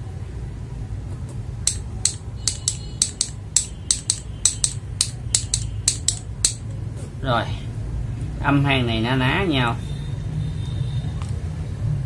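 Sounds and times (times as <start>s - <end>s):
mechanical keyboard clacking: 1.7s - 6.6s.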